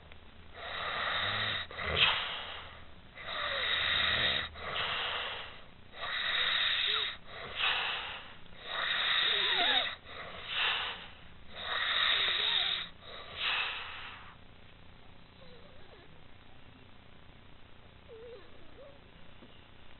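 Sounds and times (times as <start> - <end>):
woman snoring: 0.6 - 13.8.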